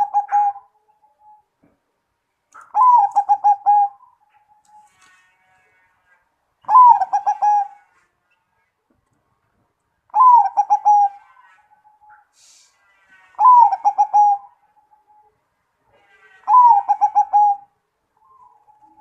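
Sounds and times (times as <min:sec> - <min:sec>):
dove cooing: 0:00.0 - 0:01.4, 0:02.7 - 0:04.3, 0:06.7 - 0:07.8, 0:10.1 - 0:11.2, 0:13.4 - 0:14.6, 0:16.4 - 0:19.0.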